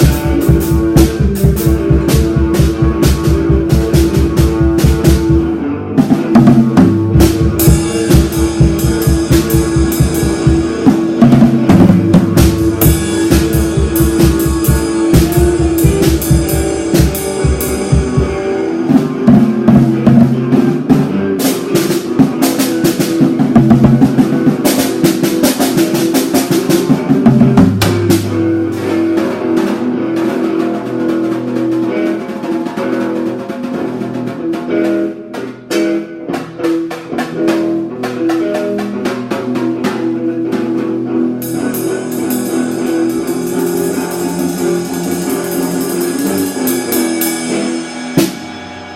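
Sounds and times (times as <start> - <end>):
bass notes: 0.0 - 22.4, 25.9 - 30.0, 40.8 - 48.9
fast drumming: 0.0 - 48.9
rock guitar: 0.0 - 48.9.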